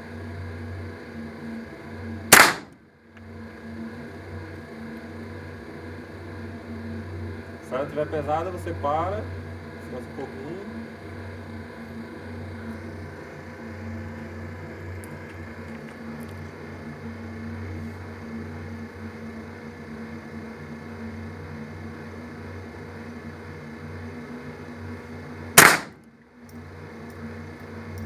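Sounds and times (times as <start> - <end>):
steady low hum: 0.0 - 28.0
loud shotgun blast: 2.3 - 2.8, 25.6 - 26.0.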